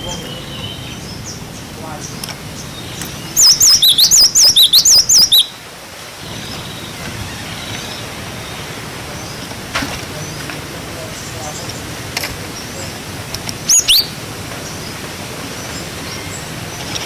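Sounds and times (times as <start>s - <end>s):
bird singing whistled notes: 0.0s - 1.4s, 2.0s - 5.6s, 13.7s - 14.8s
faint background hiss: 0.0s - 17.0s.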